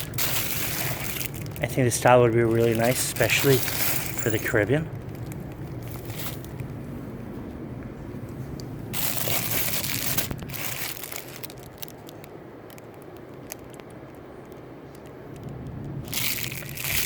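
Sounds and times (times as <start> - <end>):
packaging crinkling: 0.0 - 6.8, 8.9 - 14.0, 16.0 - 17.0.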